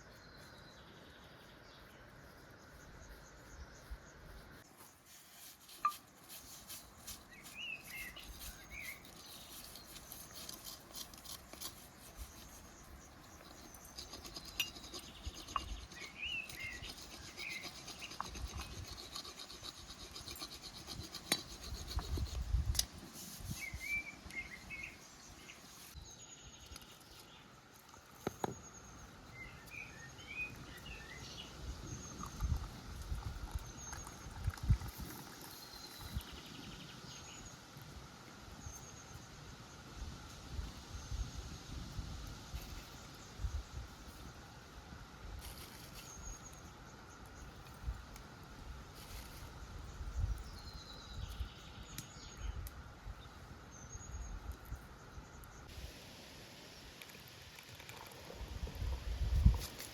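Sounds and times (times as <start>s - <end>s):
small birds chirping: 0.0s - 37.8s, 49.0s - 55.7s.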